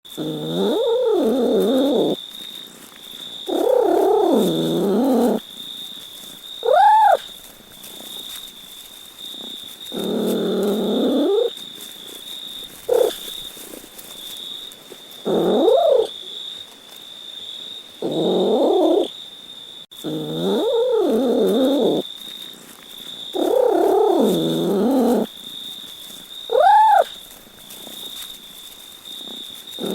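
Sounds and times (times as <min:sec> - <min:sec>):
cat meowing: 0:06.6 - 0:07.2, 0:15.3 - 0:16.1, 0:26.5 - 0:27.1.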